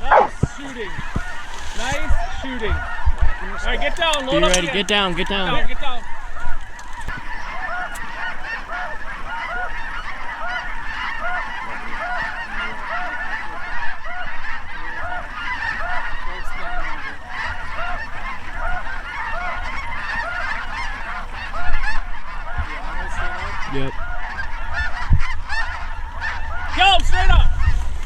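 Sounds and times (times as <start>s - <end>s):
geese honking: 0.0s - 28.0s.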